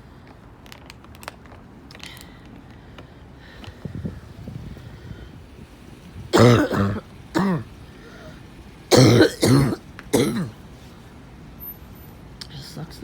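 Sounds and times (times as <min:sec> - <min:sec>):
person coughing harshly: 0:06.3 - 0:07.7, 0:08.9 - 0:10.6.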